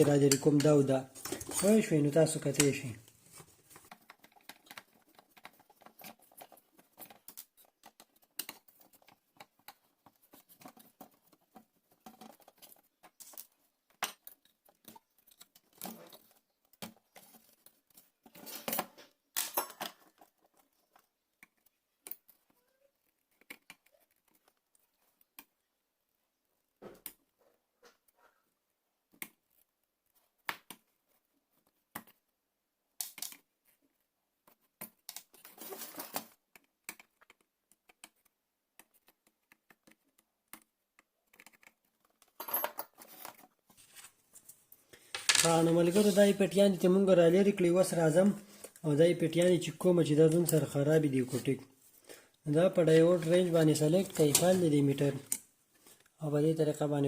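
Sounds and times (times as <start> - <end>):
hand tools clicking and scraping: 0.0 - 1.9.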